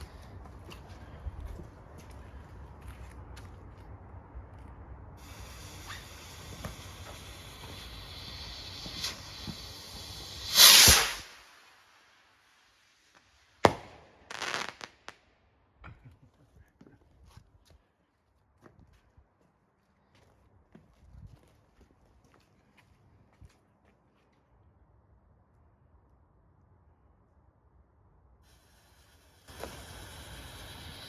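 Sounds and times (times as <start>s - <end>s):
firework bang: 5.2s - 11.4s, 13.6s - 14.9s, 29.5s - 31.0s
fuse hissing: 5.2s - 11.6s, 28.5s - 31.0s
short burst of noise: 5.2s - 11.7s
rocket whoosh: 5.2s - 11.8s.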